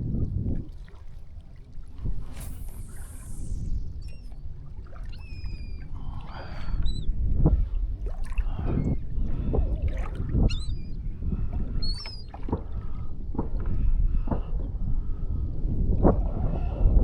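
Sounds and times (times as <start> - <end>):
water slapping against kayak hull: 0.0 - 3.4, 4.0 - 16.6
wind: 0.0 - 17.0
high bird calls: 2.7 - 7.1, 10.4 - 11.0, 11.7 - 12.4.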